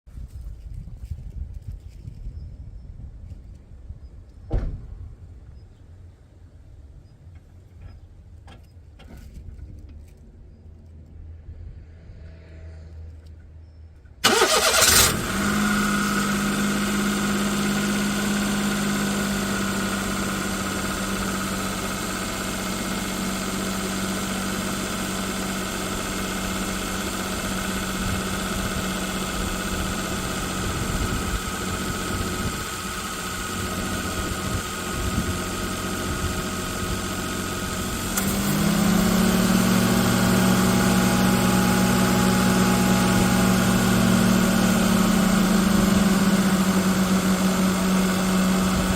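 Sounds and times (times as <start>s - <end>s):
car engine idling: 14.2s - 48.9s.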